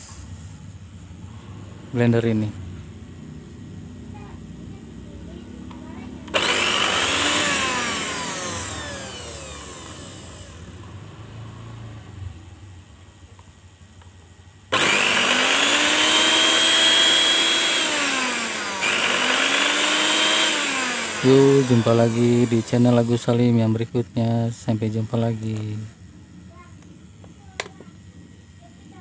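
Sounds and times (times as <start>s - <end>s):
blender motor whine: 6.2s - 12.1s, 14.7s - 23.8s, 24.8s - 25.9s.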